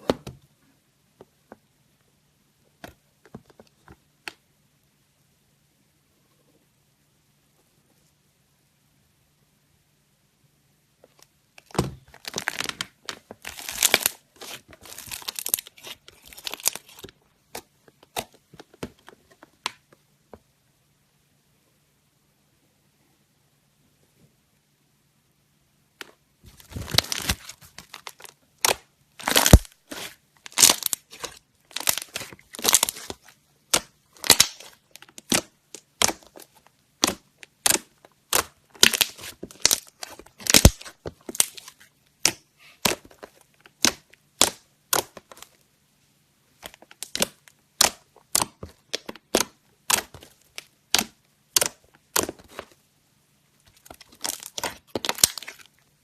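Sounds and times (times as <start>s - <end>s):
crisp crunches and crackles: 11.6s - 17.2s, 26.5s - 41.8s, 53.6s - 55.8s.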